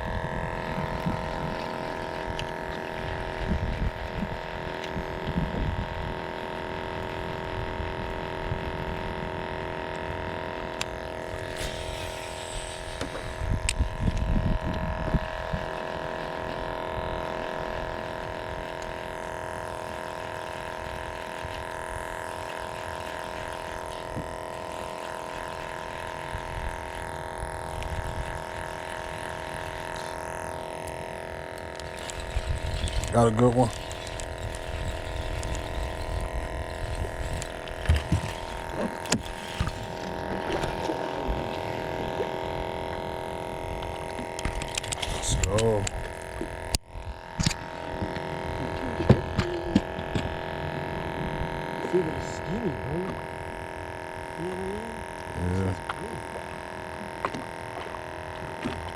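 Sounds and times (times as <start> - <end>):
wind buffeting microphone: 0.0 - 6.2, 11.8 - 15.8
boat motor running: 0.0 - 58.9.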